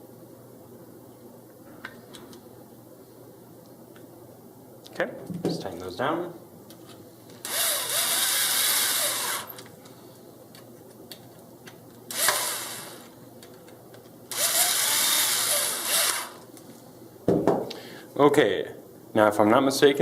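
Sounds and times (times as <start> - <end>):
power screwdriver driving screws: 7.4 - 9.6, 12.1 - 13.1, 14.3 - 16.4.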